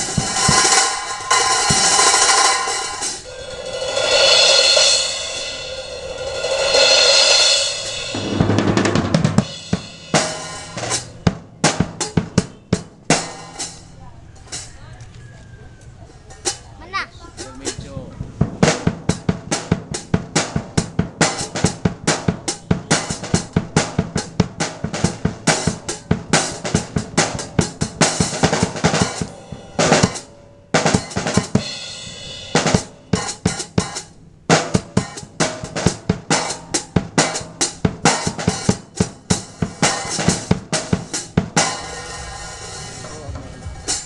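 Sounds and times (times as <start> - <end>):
drum kit playing fast: 0.0 - 14.7, 17.3 - 44.0
ringing cymbal: 0.4 - 8.3.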